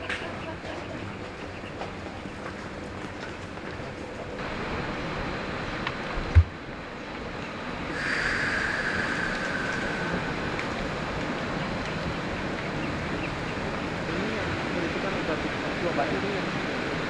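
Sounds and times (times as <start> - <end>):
industrial machinery noise: 0.0 - 17.0
hiss: 7.8 - 12.1.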